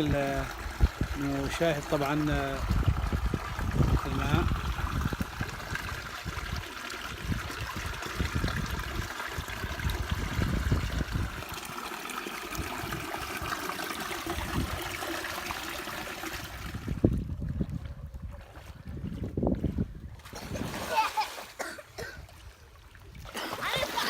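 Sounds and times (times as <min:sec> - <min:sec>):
water babbling over rocks: 0:00.0 - 0:16.2.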